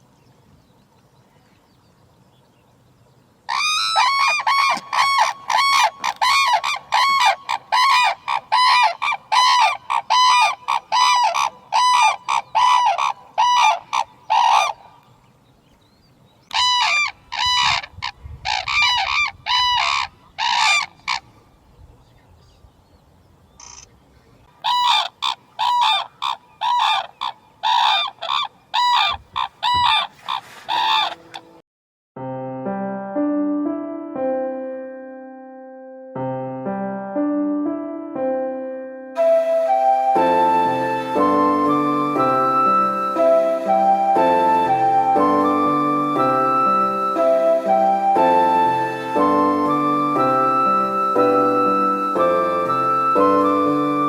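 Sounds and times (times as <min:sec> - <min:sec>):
cranes trumpeting calls: 0:03.5 - 0:15.0, 0:16.5 - 0:21.3, 0:23.6 - 0:23.9, 0:24.6 - 0:31.5.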